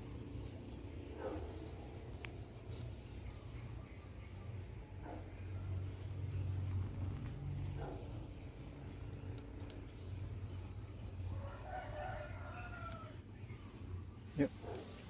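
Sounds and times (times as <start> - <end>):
steady low hum: 0.0 - 15.0
rooster crowing: 11.3 - 13.4.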